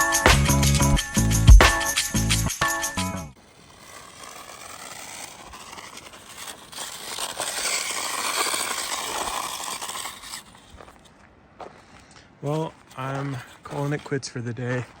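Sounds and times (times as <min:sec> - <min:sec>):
electric motor whine: 0:03.4 - 0:10.7
tyres crunching on gravel: 0:03.4 - 0:15.0.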